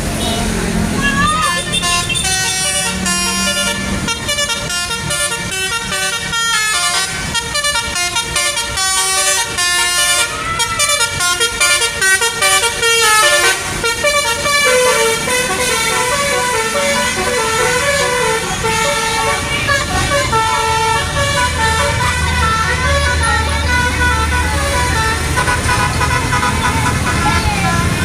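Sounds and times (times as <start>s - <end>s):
bus musical horn playing tune: 0.0s - 28.0s.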